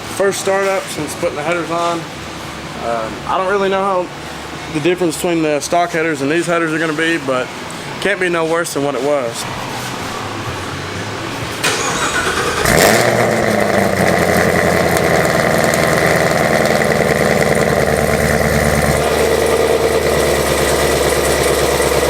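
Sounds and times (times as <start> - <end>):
car engine starting and idling: 9.2 - 22.0.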